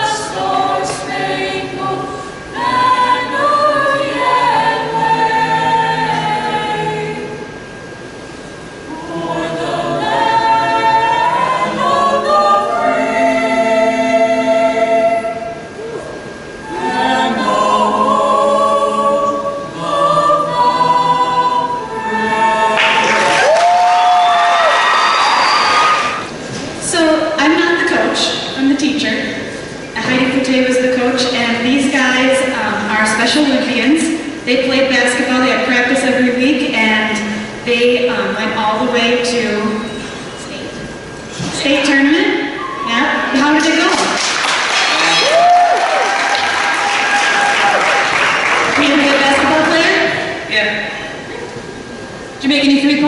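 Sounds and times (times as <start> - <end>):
choir singing long notes: 0.0 - 7.9, 8.7 - 26.4
crowd cheering and clapping: 22.7 - 26.3, 43.9 - 49.7.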